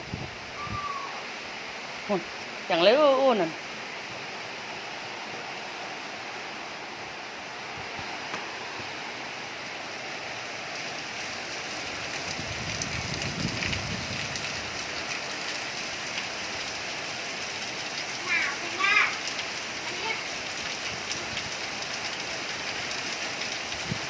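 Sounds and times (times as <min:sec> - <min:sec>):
wind gust on microphone: 0:00.0 - 0:01.2, 0:12.2 - 0:14.7
heavy rain: 0:00.0 - 0:24.0.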